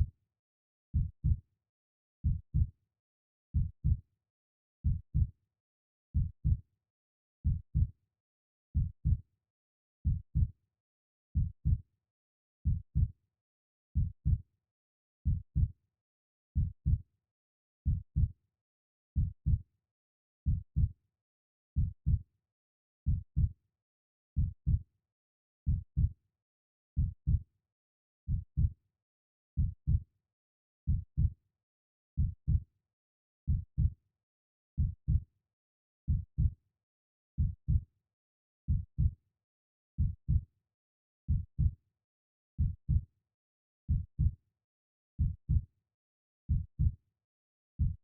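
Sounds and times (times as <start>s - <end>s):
slow heartbeat: 1.0s - 1.4s, 3.6s - 4.0s, 6.2s - 6.6s, 8.8s - 9.2s, 10.0s - 10.5s, 11.4s - 11.8s, 12.6s - 13.1s, 15.2s - 15.7s, 17.9s - 18.3s, 20.5s - 20.9s, 21.8s - 22.2s, 23.1s - 23.5s, 24.4s - 24.8s, 25.7s - 26.1s, 27.0s - 27.4s, 28.3s - 28.7s, 29.6s - 30.0s, 30.9s - 31.3s, 32.2s - 32.6s, 33.5s - 33.9s, 34.8s - 35.2s, 36.1s - 36.5s, 37.4s - 37.8s, 38.7s - 39.1s, 40.0s - 40.4s, 41.3s - 41.8s, 42.6s - 43.0s, 43.9s - 44.4s, 45.2s - 45.6s, 46.5s - 46.9s, 47.8s - 48.0s.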